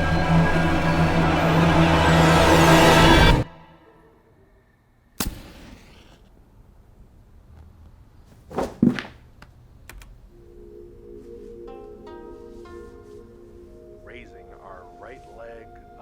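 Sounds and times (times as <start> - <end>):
loud thumps: 8.4 - 9.3
plucked-string music: 10.4 - 16.0.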